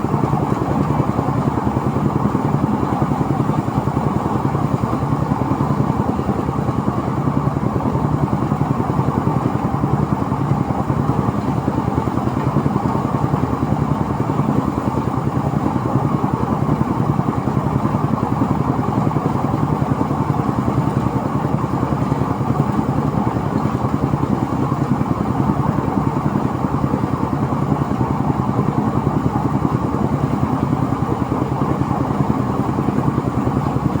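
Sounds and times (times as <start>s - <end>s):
threshing machine clatter and drone: 0.0s - 34.0s.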